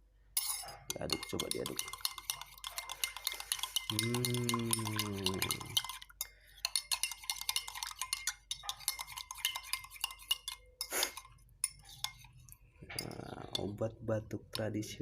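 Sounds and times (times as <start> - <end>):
spoon clinking in glass: 0.4 - 12.3
spoon scraping glass: 0.4 - 13.8.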